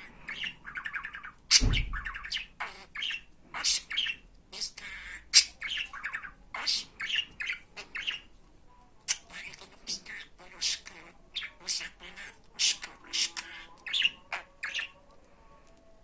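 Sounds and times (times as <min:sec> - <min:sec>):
budgerigar chirping and squawking: 0:00.0 - 0:08.3, 0:09.1 - 0:15.0
low thump: 0:01.6 - 0:02.2.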